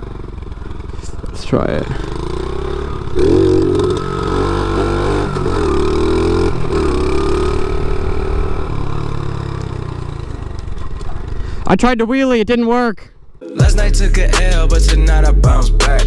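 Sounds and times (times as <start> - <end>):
motorbike engine revving: 0.0 - 11.6.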